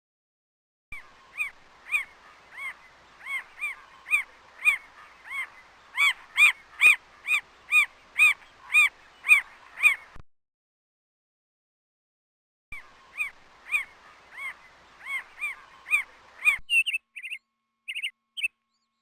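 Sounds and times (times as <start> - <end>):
bird calling: 1.0 - 10.2, 12.8 - 18.5.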